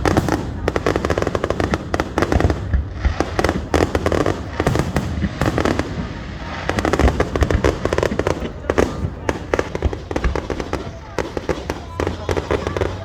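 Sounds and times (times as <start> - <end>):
fireworks pops and crackles: 0.0 - 13.0.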